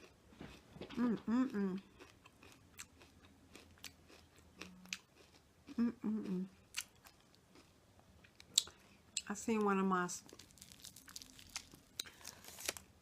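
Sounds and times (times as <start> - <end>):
person biting and chewing: 10.3 - 12.8.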